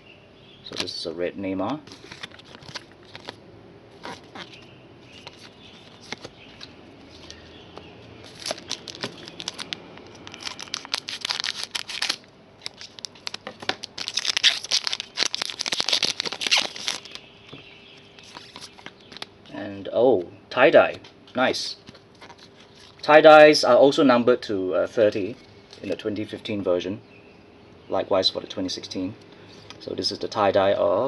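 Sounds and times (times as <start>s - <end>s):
handling rustle: 1.7s - 3.4s, 4.0s - 19.3s, 21.4s - 23.1s
plastic wrapper tearing and crinkling: 1.8s - 3.4s, 4.0s - 4.6s, 8.2s - 17.3s, 18.2s - 19.3s, 21.9s - 23.0s.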